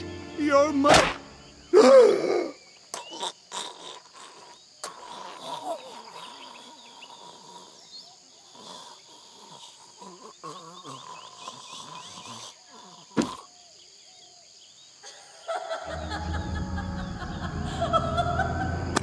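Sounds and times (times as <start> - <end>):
sharp crack: 0.9 - 1.3.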